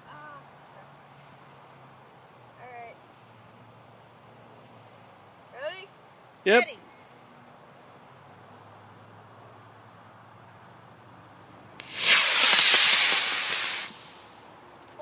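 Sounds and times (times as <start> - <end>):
rocket motor hissing rush: 11.8 - 14.3.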